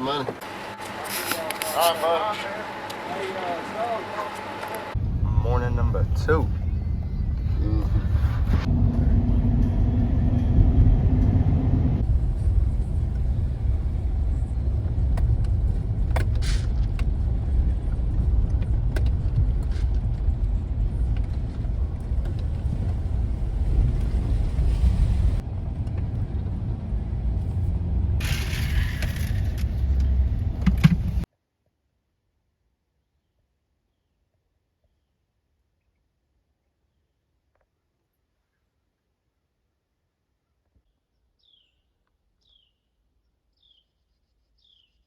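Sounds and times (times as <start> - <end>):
vehicle engine rumble: 0.3 - 31.3.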